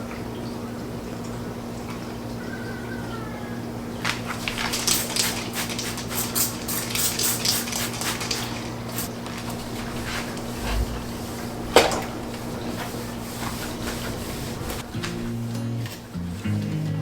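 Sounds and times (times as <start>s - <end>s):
dishes and cutlery clattering: 7.1s - 16.3s
steady low hum: 9.1s - 17.0s.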